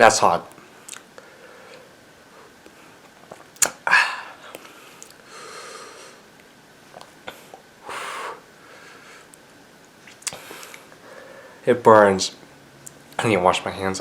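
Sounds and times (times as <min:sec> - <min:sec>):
man breathing and sniffing: 0:03.8 - 0:06.3, 0:07.2 - 0:09.4, 0:10.3 - 0:11.6.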